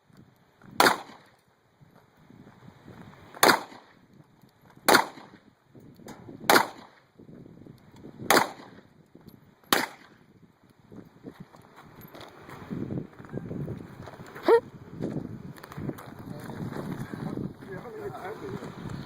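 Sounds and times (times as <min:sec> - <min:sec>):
handgun shots: 0:00.8 - 0:01.3, 0:03.4 - 0:03.9, 0:04.9 - 0:05.4, 0:06.1 - 0:07.0, 0:08.3 - 0:08.8, 0:09.7 - 0:10.2.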